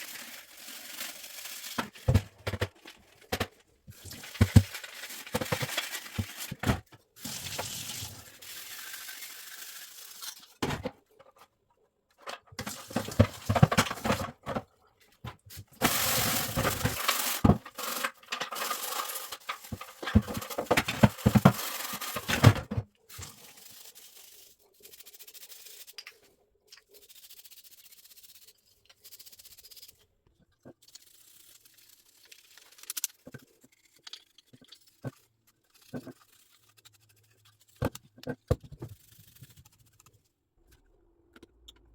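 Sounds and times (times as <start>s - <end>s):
hands scraping and clicking parts: 25.5s - 27.2s, 31.6s - 41.9s.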